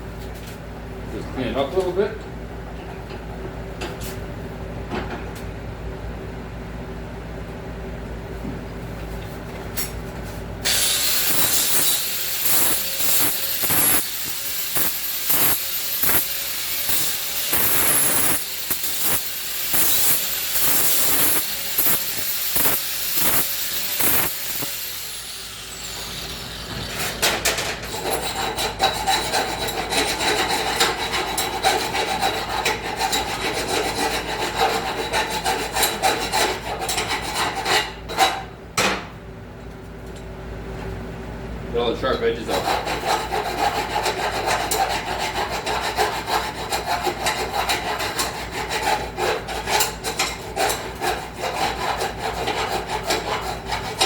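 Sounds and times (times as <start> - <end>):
power tool whine rasping metal: 10.6 - 37.5, 42.5 - 54.0
scraping on steel: 26.7 - 38.5, 42.4 - 54.0.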